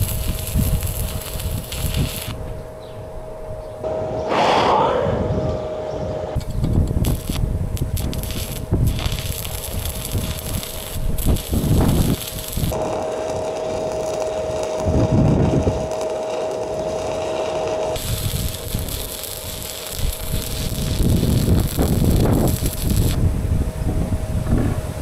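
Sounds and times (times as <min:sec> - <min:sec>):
welding arc crackling: 0:00.0 - 0:02.4, 0:06.4 - 0:23.2
wind buffeting microphone: 0:00.0 - 0:02.8, 0:03.8 - 0:16.1, 0:17.8 - 0:25.0.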